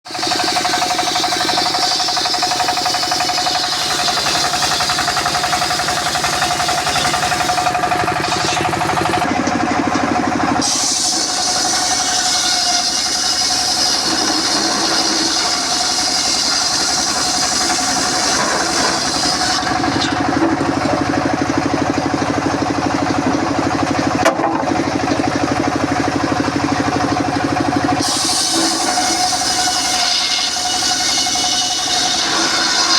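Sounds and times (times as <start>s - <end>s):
saw cutting wood hiss: 0.1s - 9.3s, 10.6s - 20.6s, 27.9s - 32.9s
circular saw running: 0.1s - 32.9s.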